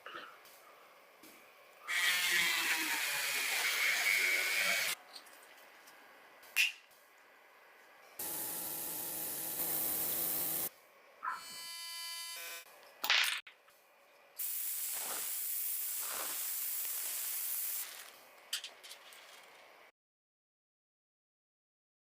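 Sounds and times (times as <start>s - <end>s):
hissing noise bursts: 14.4s - 18.1s.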